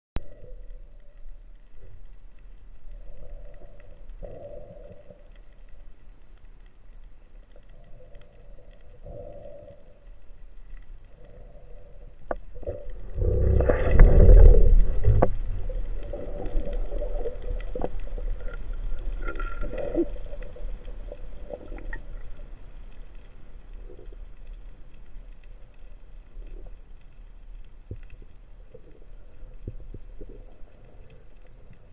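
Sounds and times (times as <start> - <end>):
soft water swishes: 0.2 - 31.9
underwater rumble: 0.2 - 31.9
loud underwater rushing: 12.9 - 17.6.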